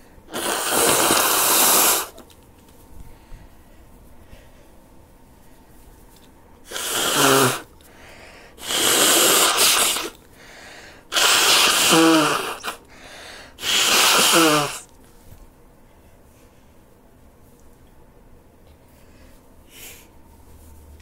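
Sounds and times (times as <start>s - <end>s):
person blowing nose: 0.3s - 2.2s, 6.7s - 7.7s, 8.6s - 10.2s, 11.1s - 12.9s, 13.5s - 14.9s.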